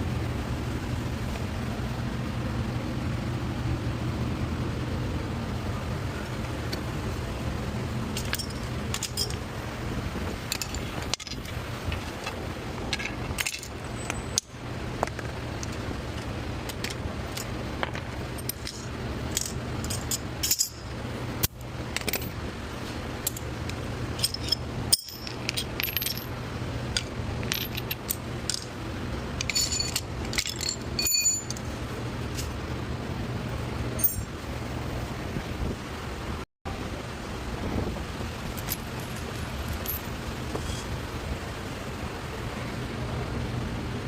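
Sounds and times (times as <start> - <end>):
metal tools clinking and rattling: 8.1 - 9.4, 10.5 - 22.4, 23.2 - 28.7, 29.4 - 32.6, 34.0 - 34.3, 38.6 - 40.9.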